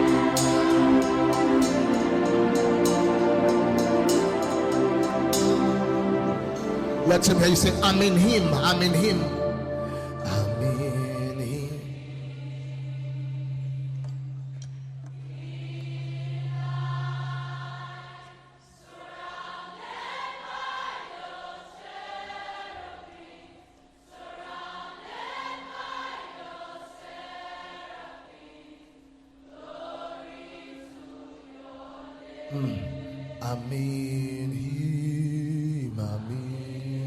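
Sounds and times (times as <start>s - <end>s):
low held tone: 0.0s - 18.7s.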